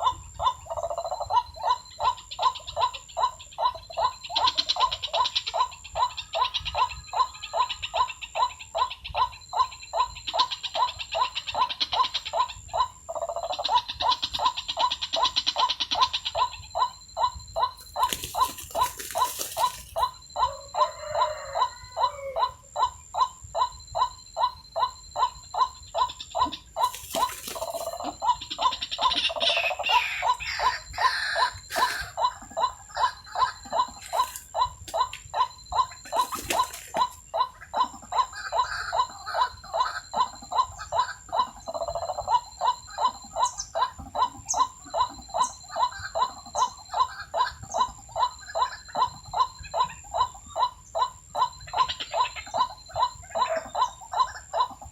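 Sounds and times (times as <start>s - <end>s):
waterhen calling: 17.8s - 22.4s, 26.8s - 35.2s, 35.8s - 37.7s.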